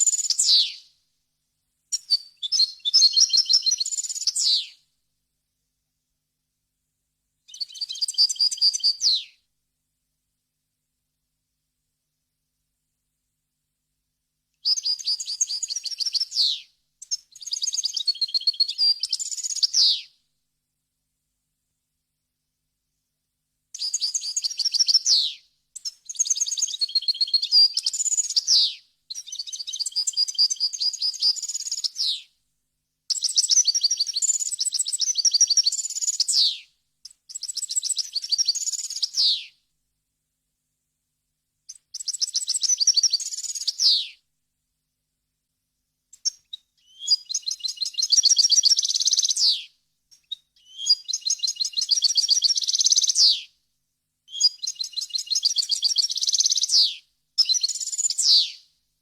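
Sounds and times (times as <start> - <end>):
goldfinch twittering song: 46.2 - 49.6, 54.4 - 58.6.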